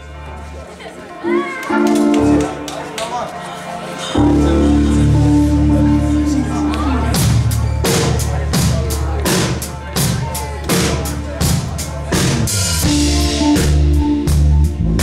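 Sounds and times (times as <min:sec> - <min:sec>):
bass notes: 0:04.2 - 0:10.1, 0:10.8 - 0:15.0
drum kit beat: 0:04.2 - 0:15.0.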